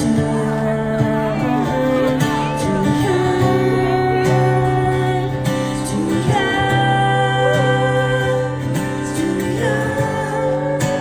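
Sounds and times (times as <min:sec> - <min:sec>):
acoustic guitar chords: 0:00.0 - 0:11.0
wavering voices: 0:00.0 - 0:11.0.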